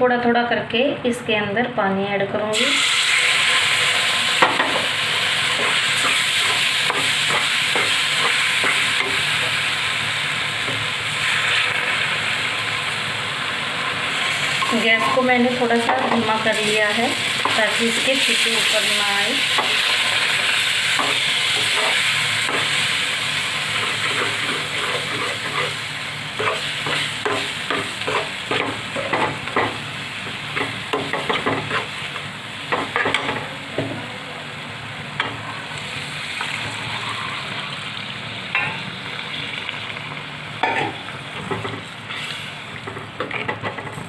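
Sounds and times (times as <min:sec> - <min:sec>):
batter sizzling in a pan: 0:02.5 - 0:33.4, 0:35.3 - 0:43.2
spoon scraping a pan: 0:23.8 - 0:25.8, 0:26.4 - 0:29.7.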